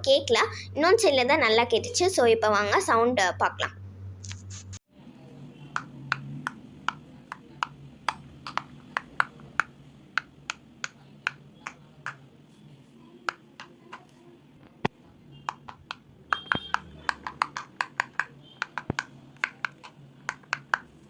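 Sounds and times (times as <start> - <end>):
fidget toy bubbles popping: 15.5 - 21.0.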